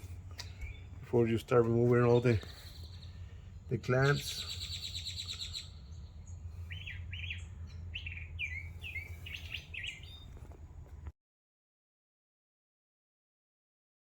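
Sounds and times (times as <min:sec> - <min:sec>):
bird chirping: 0:00.0 - 0:10.6
low steady hum: 0:00.0 - 0:11.1.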